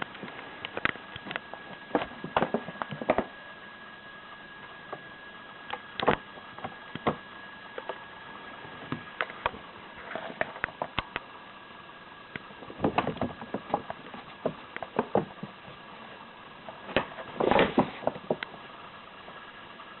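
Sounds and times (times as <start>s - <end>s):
faint steady hum: 0.0s - 20.0s.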